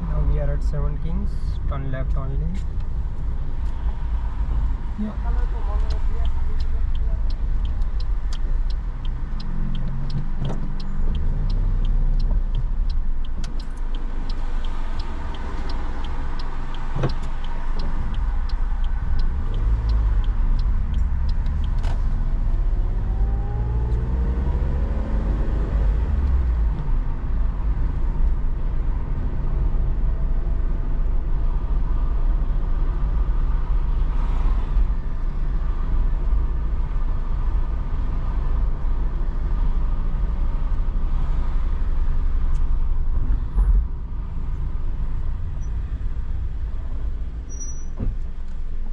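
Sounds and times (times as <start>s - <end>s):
car road and engine rumble: 0.0s - 48.9s
evenly spaced sharp ticks: 5.8s - 22.5s.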